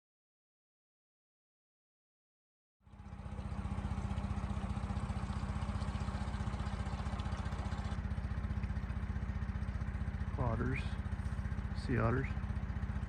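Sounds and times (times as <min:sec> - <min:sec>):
boat engine throbbing: 0:02.8 - 0:13.0.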